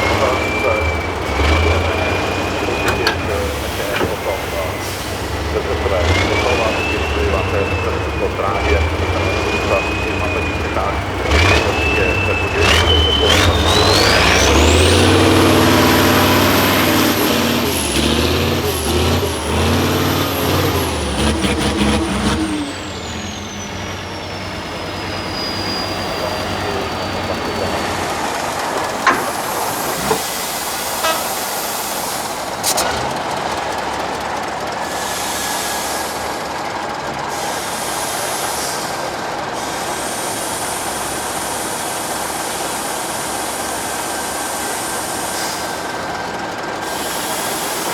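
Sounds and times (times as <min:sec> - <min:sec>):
steady vehicle noise: 0:00.0 - 0:47.9
truck diesel engine working hard: 0:00.0 - 0:47.9
sharp knocks and clicks: 0:28.9 - 0:30.3.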